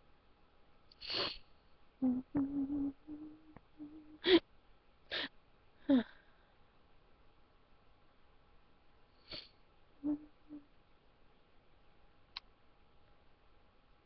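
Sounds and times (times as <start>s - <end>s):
short hummed sounds: 2.0s - 4.4s, 10.0s - 10.6s.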